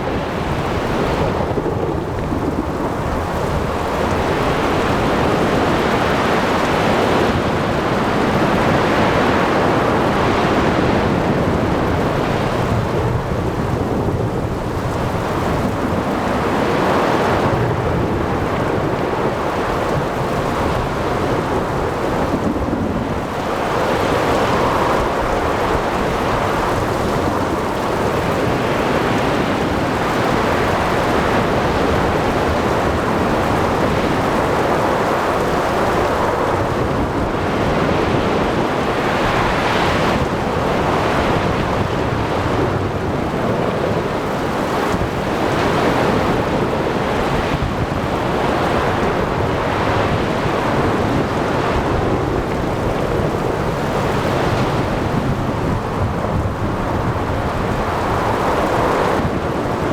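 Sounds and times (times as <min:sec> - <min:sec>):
rain: 0:00.0 - 0:59.9
waves: 0:00.0 - 0:59.9
wind: 0:00.0 - 0:59.9.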